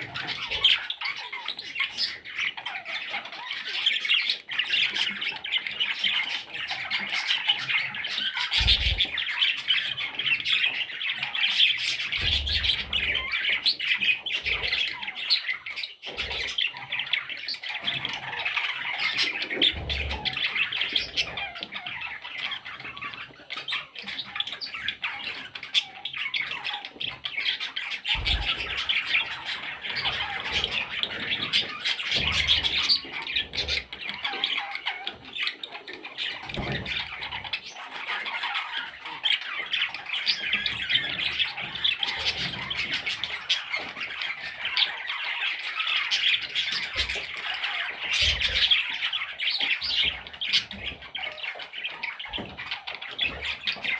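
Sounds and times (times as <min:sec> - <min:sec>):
parrot chicks squawking: 0:00.0 - 0:53.9.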